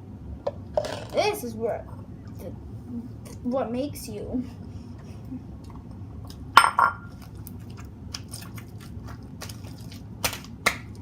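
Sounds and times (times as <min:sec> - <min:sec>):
utensil clinking against bowl: 0:06.6 - 0:07.2.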